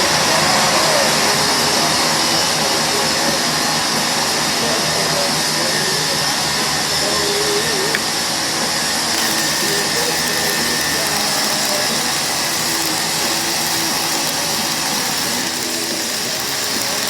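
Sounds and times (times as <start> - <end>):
welding arc crackling and hissing: 9.1 - 17.0.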